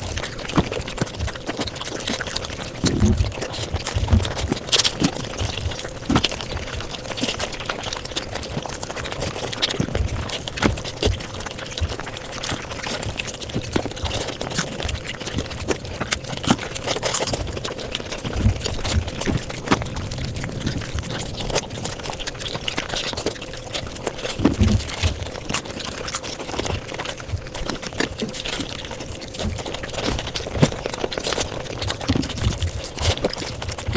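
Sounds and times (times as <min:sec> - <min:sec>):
fast chewing and mouth clicks: 0:00.0 - 0:33.9.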